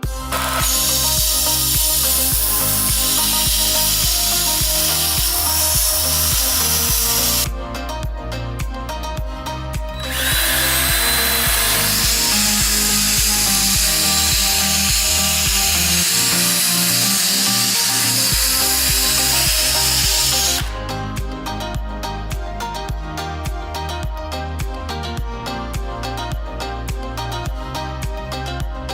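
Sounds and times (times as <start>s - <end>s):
background music with steady beat: 0.0s - 28.9s
abrasive disc grinding steel: 10.0s - 20.8s.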